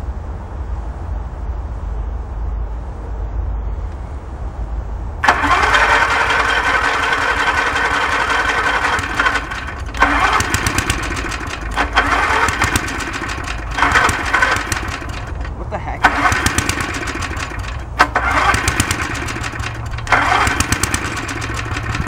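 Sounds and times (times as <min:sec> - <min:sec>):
low engine rumble: 0:00.0 - 0:22.0
lawn mower starter cranking: 0:05.2 - 0:22.0.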